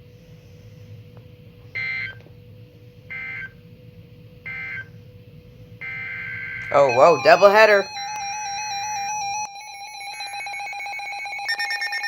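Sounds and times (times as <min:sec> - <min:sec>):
faint steady hum: 0:00.0 - 0:11.5
warbling digital data tone: 0:05.8 - 0:10.6.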